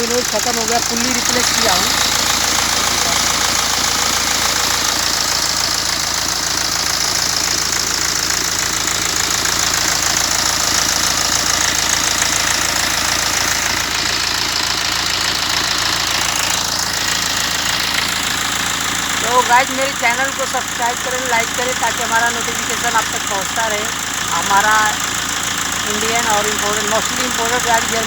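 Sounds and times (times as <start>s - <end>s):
diesel engine idling: 0.0s - 28.0s.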